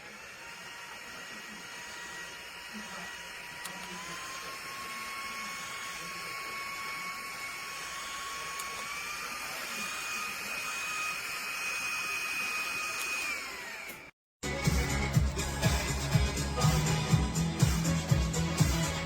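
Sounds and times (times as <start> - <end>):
portable fan motor whine: 0.0 - 14.1.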